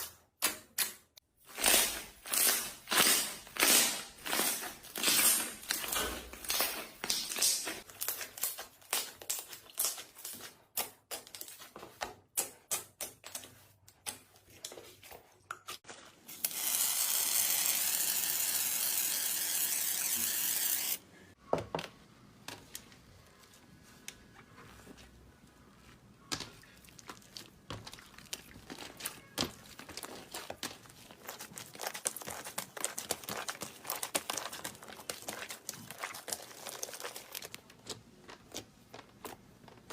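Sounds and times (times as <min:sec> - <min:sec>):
slime crackling and popping: 0:26.9 - 0:38.6.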